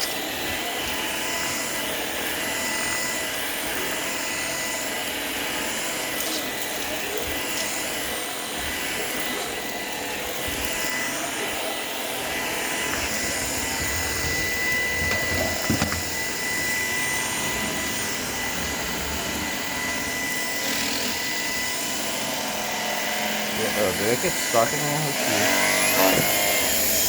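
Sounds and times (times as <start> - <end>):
robot vacuum whirring: 0.0 - 27.0.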